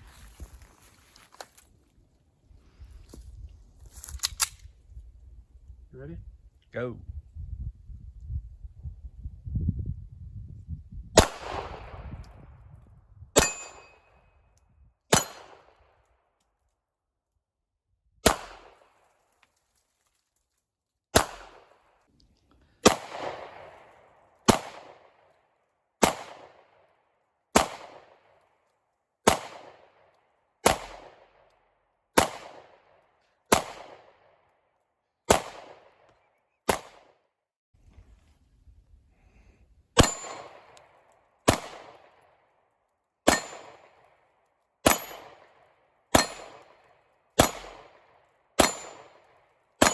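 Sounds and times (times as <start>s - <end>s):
gunshots with echo: 11.2s - 12.0s, 33.5s - 34.0s, 40.0s - 40.7s, 47.4s - 47.9s.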